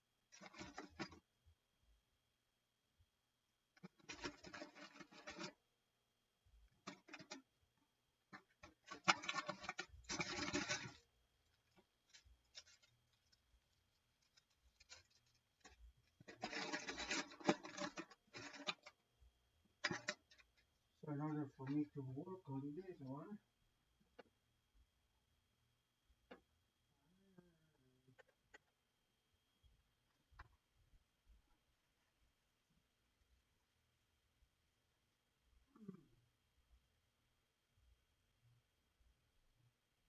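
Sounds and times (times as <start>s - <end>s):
scraping and rubbing on phone screen: 0.3s - 1.2s, 3.8s - 5.6s, 6.8s - 7.6s, 8.3s - 19.0s, 19.8s - 20.6s.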